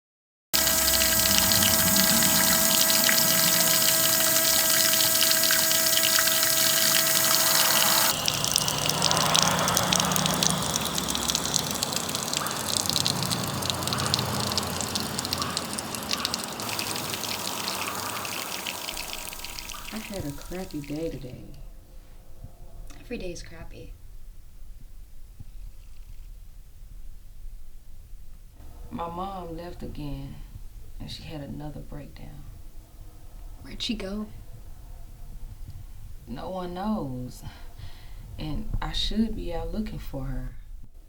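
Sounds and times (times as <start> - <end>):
water running and gushing: 0.6 - 21.4
water burbling: 0.6 - 21.5.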